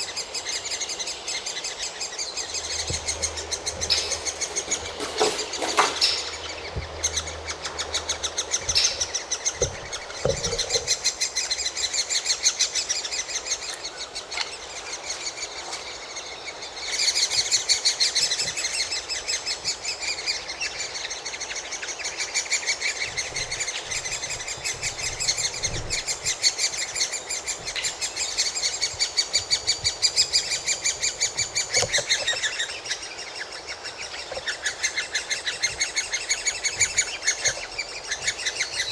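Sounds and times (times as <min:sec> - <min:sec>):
woodpecker chicks chattering: 0:00.0 - 0:38.9.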